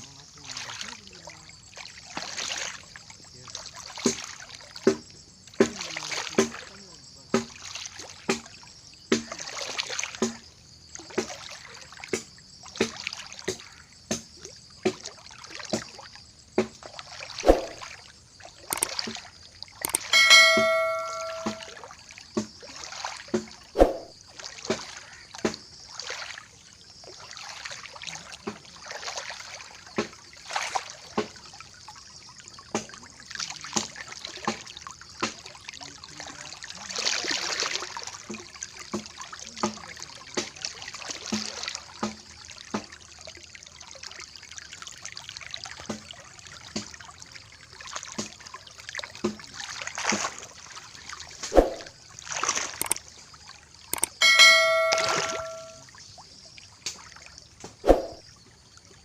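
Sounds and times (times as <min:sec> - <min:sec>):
rushing floodwater: 0:00.0 - 0:12.1, 0:12.7 - 0:23.7, 0:24.3 - 0:55.8
metallic clang: 0:19.9 - 0:21.7, 0:54.0 - 0:55.8
sharp knocks: 0:19.9 - 0:21.7.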